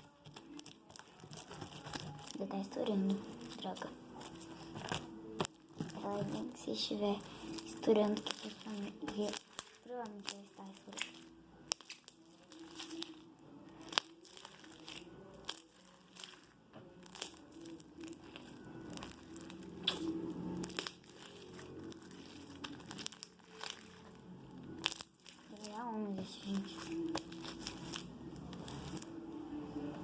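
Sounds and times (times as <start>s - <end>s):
slime squeezed by hand: 7.2s - 13.2s, 13.8s - 24.1s.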